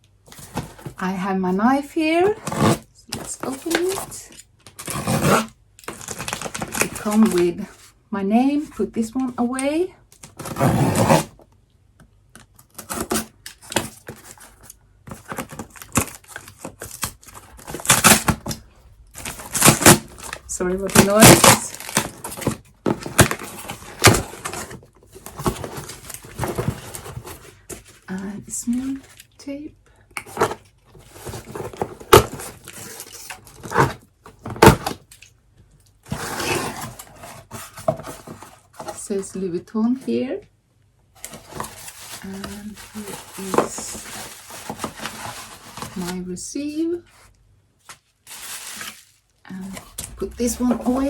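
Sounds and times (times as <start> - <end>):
packaging ripping: 4.7 - 7.4, 12.6 - 27.3
cardboard and paper crackling: 12.6 - 29.3, 41.2 - 46.2, 47.9 - 51.0
knife cutting parcel: 15.2 - 24.8
packaging crackling: 15.2 - 27.2
sharp ripping: 15.7 - 22.6.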